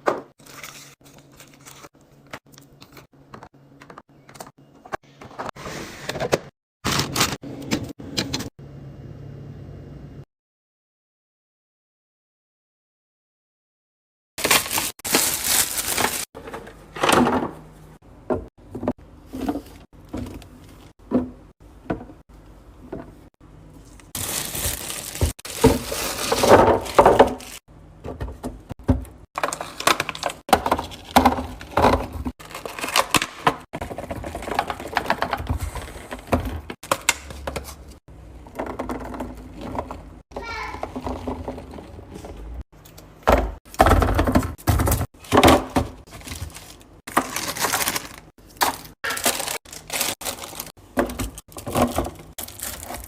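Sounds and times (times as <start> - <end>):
packaging crackling and rustling: 14.4 - 16.4, 24.2 - 27.6, 46.1 - 53.0
items clattering in refrigerator: 14.4 - 53.0.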